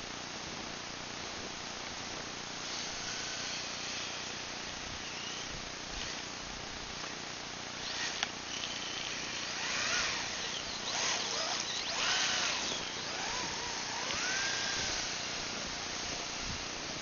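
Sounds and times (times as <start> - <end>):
steady hiss: 0.0 - 17.0
electric motor whining: 2.6 - 6.3, 7.8 - 16.8.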